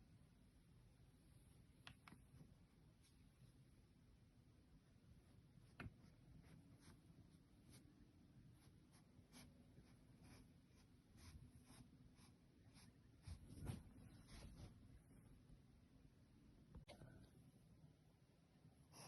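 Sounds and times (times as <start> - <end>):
soft scratching strokes: 5.1 - 15.2.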